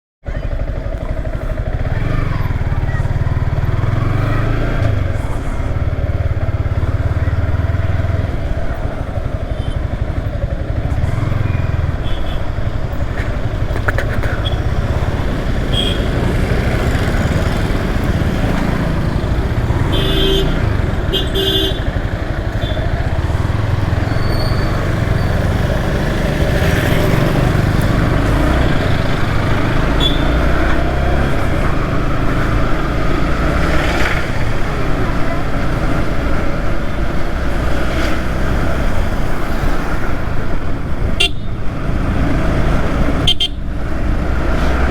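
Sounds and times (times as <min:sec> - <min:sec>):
motorcycle engine running: 0:00.3 - 0:44.9
vehicle horn honking: 0:11.6 - 0:12.6, 0:15.6 - 0:16.3, 0:19.7 - 0:23.3, 0:29.8 - 0:30.6, 0:41.2 - 0:41.6, 0:43.2 - 0:43.7.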